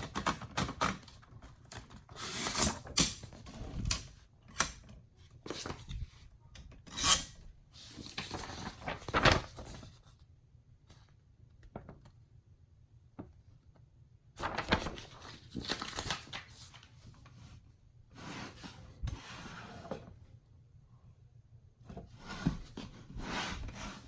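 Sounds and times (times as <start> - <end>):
paper rubbing and sliding in typewriter: 22.2 - 24.0.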